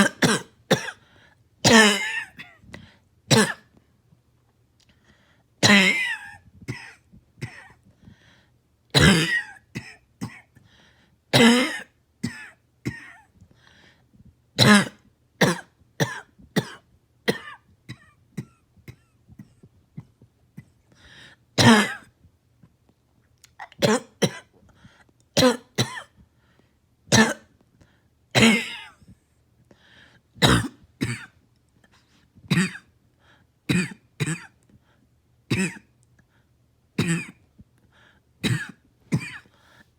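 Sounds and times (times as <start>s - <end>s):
person coughing: 0.0s - 1.0s, 1.6s - 2.7s, 3.3s - 3.7s, 5.6s - 7.8s, 9.0s - 10.6s, 11.3s - 13.4s, 14.6s - 20.8s, 21.6s - 22.1s, 23.6s - 24.6s, 25.4s - 26.2s, 27.1s - 27.5s, 28.4s - 29.0s, 30.4s - 31.4s, 32.5s - 32.9s, 33.7s - 34.6s, 35.5s - 35.9s, 37.0s - 37.4s, 38.4s - 39.5s
throat clearing: 14.6s - 20.8s, 32.5s - 32.9s, 35.5s - 35.9s, 37.0s - 37.4s.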